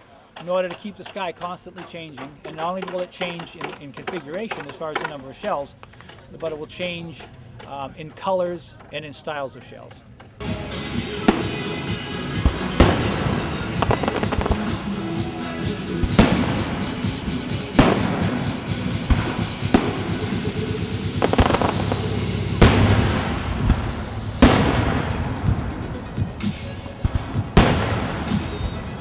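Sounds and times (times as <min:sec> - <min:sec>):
background music: 0:00.4 - 0:29.0
fireworks booming and crackling: 0:10.4 - 0:29.0.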